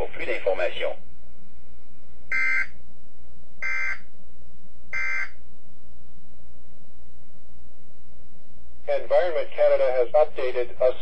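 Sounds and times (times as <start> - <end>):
radio hiss and hum: 0.0 - 1.2, 8.8 - 11.0.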